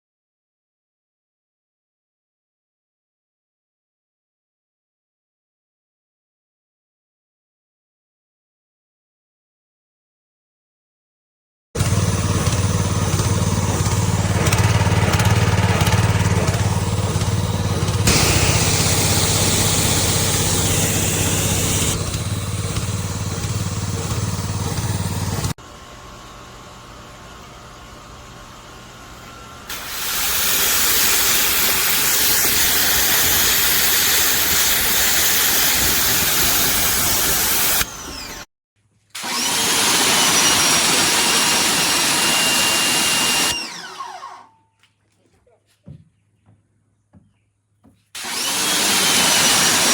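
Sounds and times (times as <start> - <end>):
pressure washer motor hum: 11.8 - 38.5, 39.2 - 44.5, 48.2 - 49.9
pressure washer spray hiss: 29.7 - 37.9.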